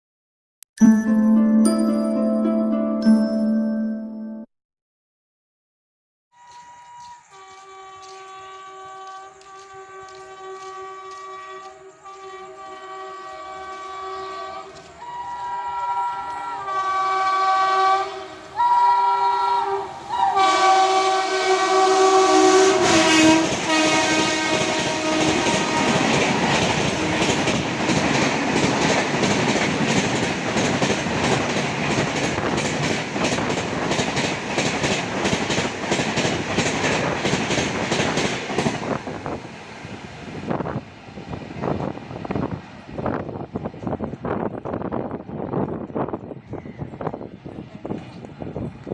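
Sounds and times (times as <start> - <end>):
locomotive horn blasts: 6.3 - 26.3
train coaches rushing past: 6.4 - 48.9
wheels clacking over rail joints: 24.4 - 39.1.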